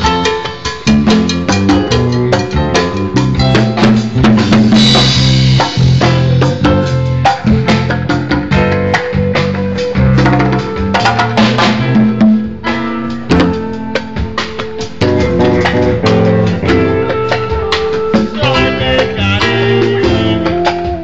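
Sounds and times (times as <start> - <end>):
drum kit beat: 0.0 - 21.0
low pitched notes: 0.0 - 21.0
sustained guitar: 0.0 - 21.0.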